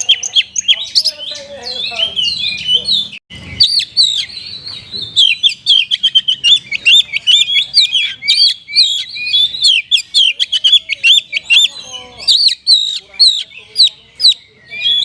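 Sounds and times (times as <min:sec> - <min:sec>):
bird chirping song: 0:00.0 - 0:15.0.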